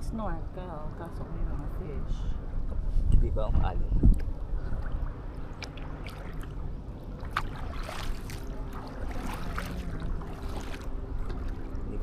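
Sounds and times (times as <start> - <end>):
low steady rumble: 0.0 - 12.0
water trickling: 4.2 - 12.0
paddles splashing in water: 4.6 - 12.0.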